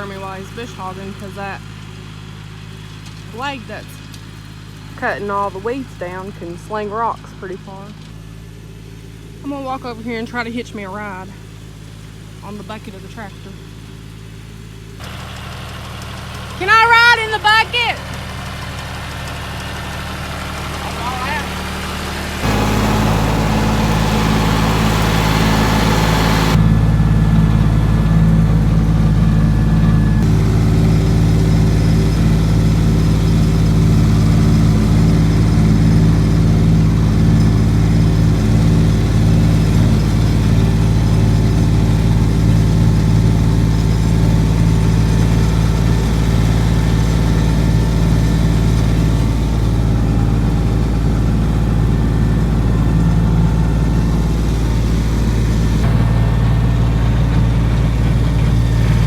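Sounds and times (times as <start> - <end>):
tractor diesel engine running: 0.0 - 59.0.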